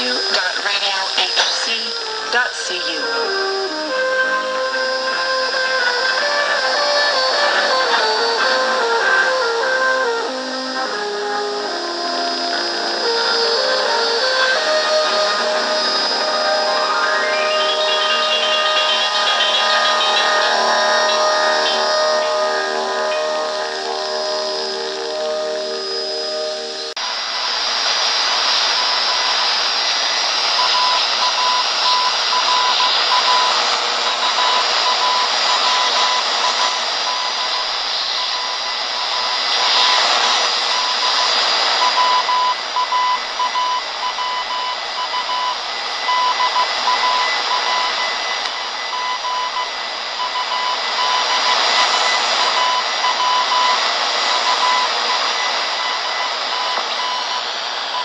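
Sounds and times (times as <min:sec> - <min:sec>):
radio static hiss: 0:00.0 - 0:58.0
morse code beeping tone: 0:13.8 - 0:25.5, 0:40.8 - 0:48.2, 0:48.9 - 0:57.4.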